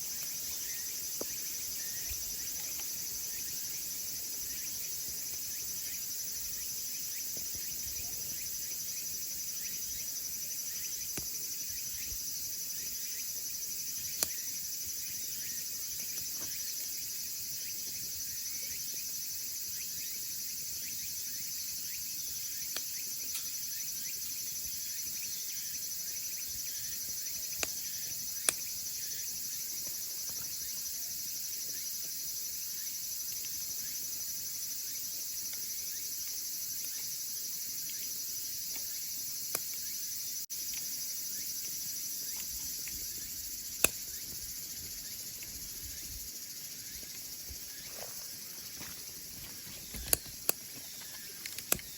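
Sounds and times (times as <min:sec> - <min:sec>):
insects chirring: 0:00.0 - 0:51.9
firewood popping in stove: 0:49.8 - 0:51.9.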